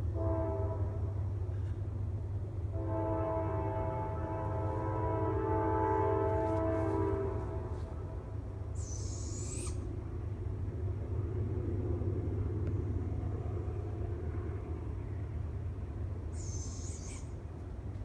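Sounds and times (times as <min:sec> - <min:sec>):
passing train rumbling: 0:00.0 - 0:18.0
animal screeching: 0:08.8 - 0:09.9, 0:16.4 - 0:17.3.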